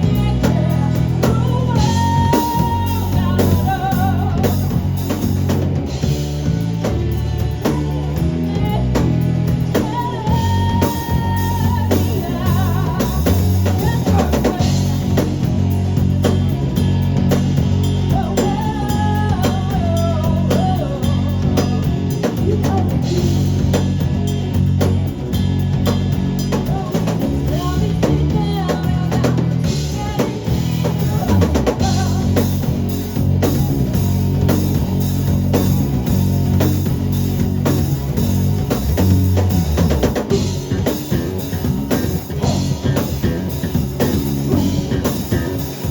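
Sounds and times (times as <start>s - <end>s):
person singing: 0.0s - 5.2s, 7.4s - 15.4s, 18.0s - 23.7s, 26.6s - 33.8s, 41.9s - 45.7s
drum kit beat: 0.0s - 45.9s
rock band playing: 0.0s - 45.9s.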